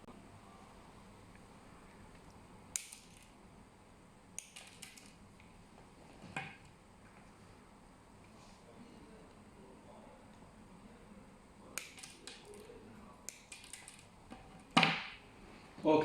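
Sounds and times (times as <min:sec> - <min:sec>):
scissors snipping wires: 0:02.7 - 0:03.3, 0:04.4 - 0:05.2, 0:11.8 - 0:12.7, 0:13.3 - 0:14.1.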